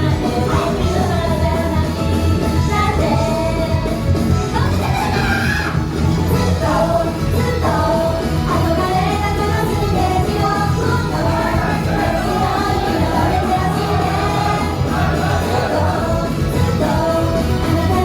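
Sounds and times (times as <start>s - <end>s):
women singing together: 0.0s - 2.0s, 6.3s - 18.0s
pop backing track over pa: 0.0s - 18.0s.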